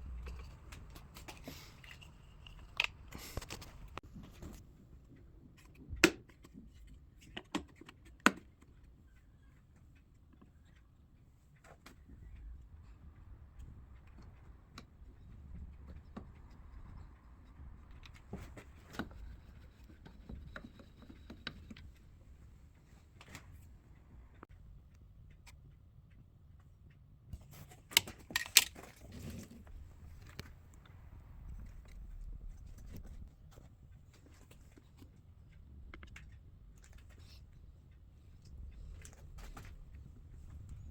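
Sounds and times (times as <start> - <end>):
knocks and clicks of tools: 27.8 - 29.5.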